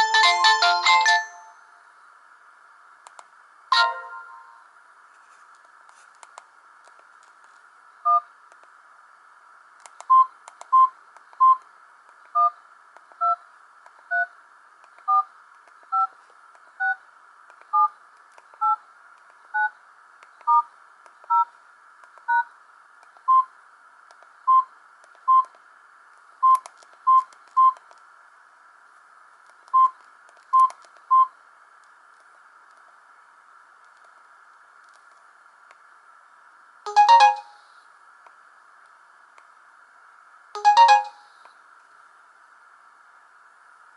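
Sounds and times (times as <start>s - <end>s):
faint steady hiss: 0.0s - 43.9s
dual-tone keypad beeps: 36.9s - 37.6s, 40.6s - 41.2s
plain beeps: 36.9s - 37.6s, 40.6s - 41.3s.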